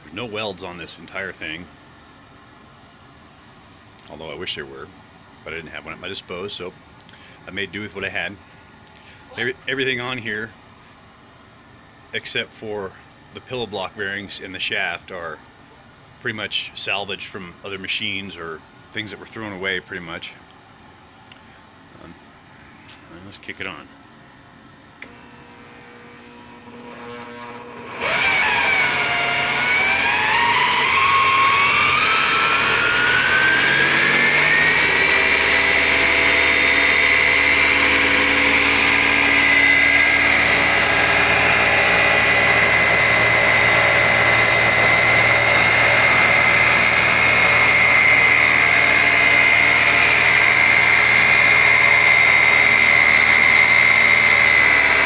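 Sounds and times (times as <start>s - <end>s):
electric motor whine spinning up: 25.0s - 55.0s.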